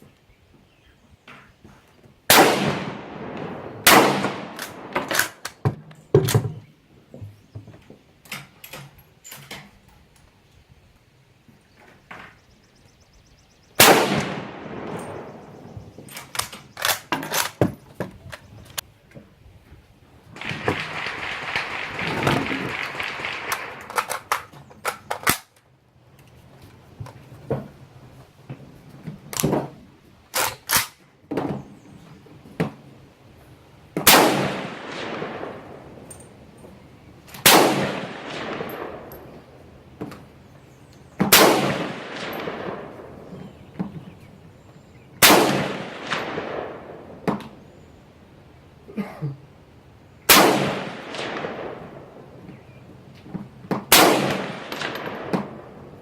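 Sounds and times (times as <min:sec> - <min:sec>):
rifle shots echoing: 0:02.3 - 0:05.6, 0:13.8 - 0:17.6, 0:20.4 - 0:25.5, 0:34.0 - 0:36.8, 0:37.4 - 0:39.6, 0:41.2 - 0:43.7, 0:45.2 - 0:47.6, 0:50.3 - 0:52.4, 0:53.8 - 0:56.0
quiet cracks: 0:03.6 - 0:06.4, 0:14.2 - 0:19.3, 0:20.4 - 0:27.7, 0:50.7 - 0:56.0.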